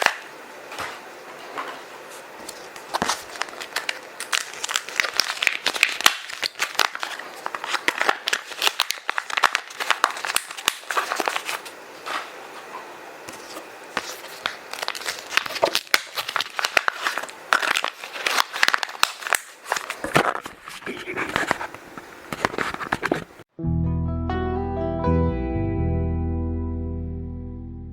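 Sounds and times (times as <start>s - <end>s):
paper and plastic bags crinkling: 2.4s - 12.3s, 13.3s - 23.3s.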